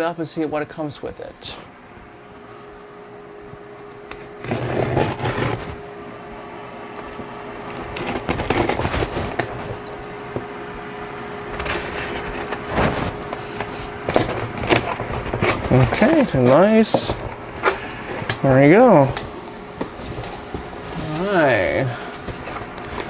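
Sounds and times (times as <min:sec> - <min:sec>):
faint steady hum: 0:00.0 - 0:23.0
cardboard box being handled: 0:07.7 - 0:10.5, 0:11.6 - 0:23.0.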